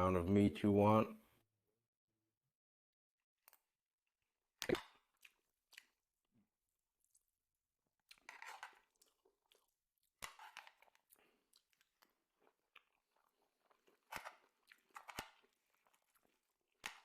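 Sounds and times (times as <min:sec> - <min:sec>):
chewing and crunching food: 0:04.6 - 0:17.0.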